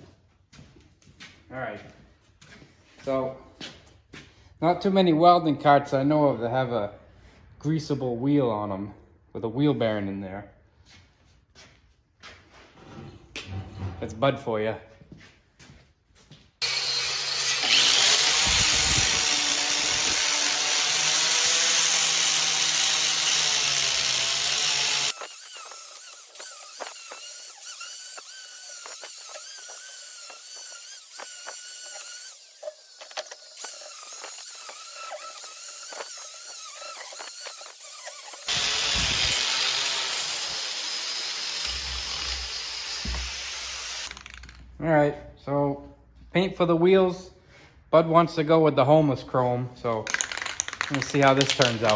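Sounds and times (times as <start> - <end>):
high-speed power tool running: 16.6 - 44.5, 50.1 - 51.9
scraping clicks: 50.1 - 51.9.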